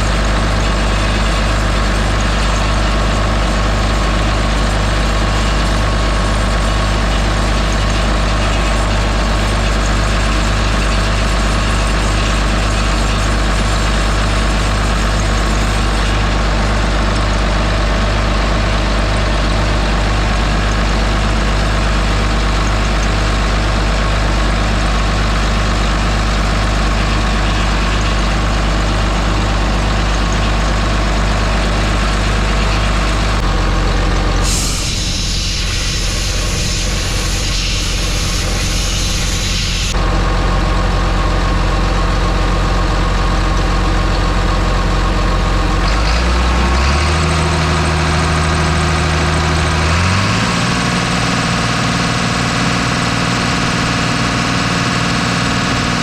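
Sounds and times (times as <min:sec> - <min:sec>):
diesel engine idling: 0:00.0 - 0:56.0.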